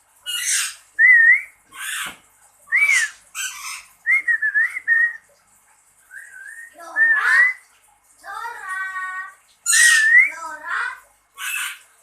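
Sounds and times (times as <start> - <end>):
bird whistling: 2.7 - 3.1, 6.1 - 7.6, 9.7 - 10.3.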